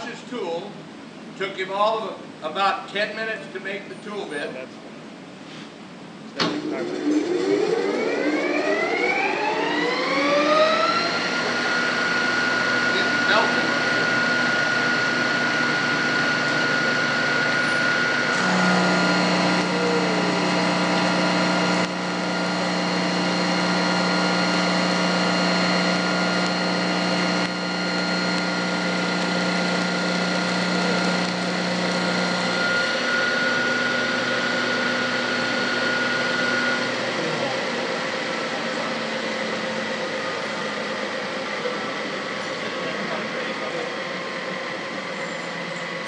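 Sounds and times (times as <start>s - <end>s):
metal lathe drone: 6.7s - 46.0s
strong low hum: 13.0s - 36.0s.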